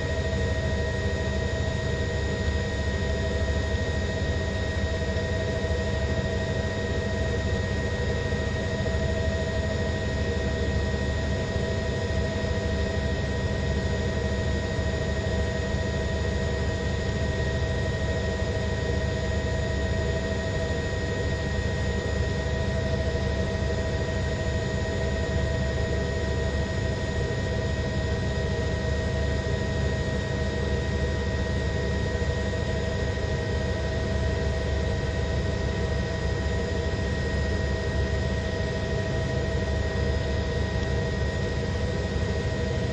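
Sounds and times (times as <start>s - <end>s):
helicopter engine and rotor: 0.0s - 42.9s.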